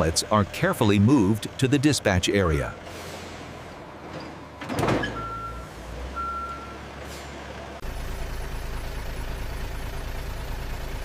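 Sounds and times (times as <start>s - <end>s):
vehicle reversing alarm beeps: 5.0s - 6.9s.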